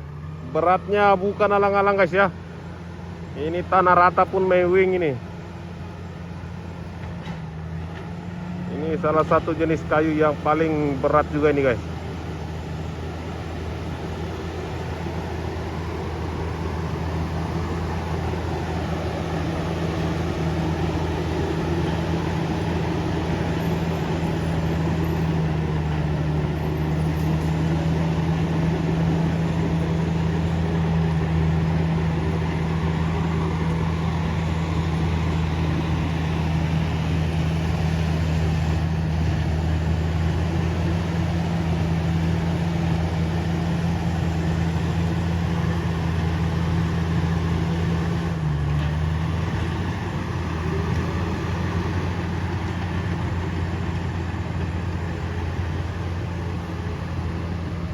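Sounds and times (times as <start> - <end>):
bulldozer diesel engine under load: 0.0 - 57.9.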